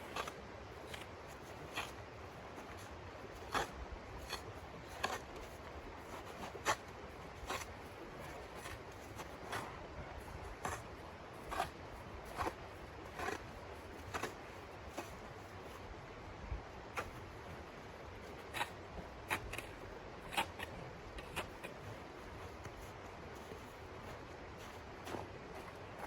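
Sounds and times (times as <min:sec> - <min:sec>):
soft steady hiss: 0:00.0 - 0:26.0
footsteps crunching in snow: 0:21.4 - 0:26.0.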